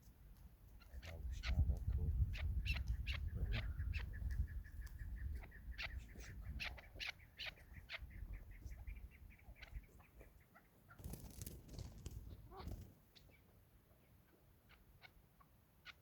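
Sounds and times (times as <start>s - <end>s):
partridge clucking calls: 0.7s - 13.5s, 14.2s - 16.0s
noisy rustle: 11.0s - 13.0s.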